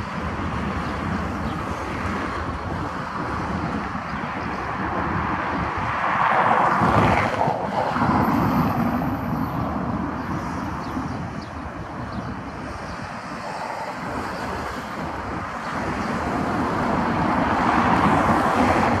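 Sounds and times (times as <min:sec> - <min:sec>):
wheels rumbling on rails: 0:00.0 - 0:19.0.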